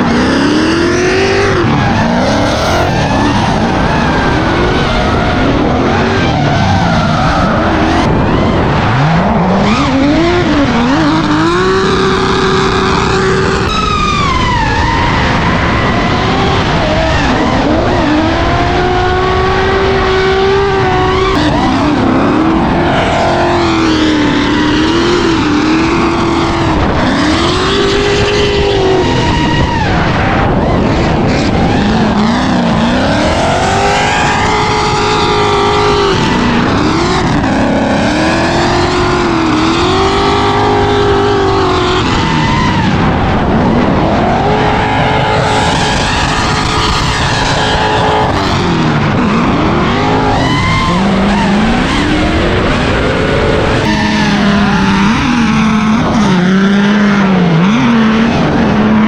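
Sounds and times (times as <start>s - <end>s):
car engines revving hard: 0.0s - 59.0s
tyres skidding: 0.0s - 59.0s.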